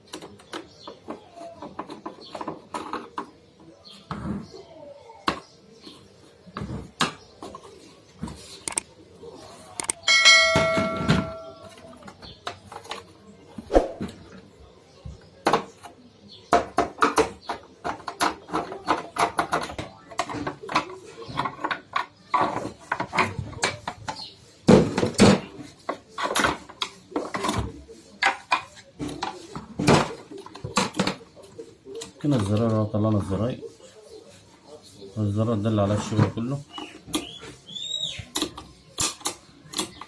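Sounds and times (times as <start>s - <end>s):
plastic parts clicking and knocking: 0.0s - 4.5s, 5.2s - 5.5s, 6.6s - 8.9s, 9.8s - 10.1s, 10.7s - 13.2s, 15.0s - 33.3s, 38.2s - 40.0s.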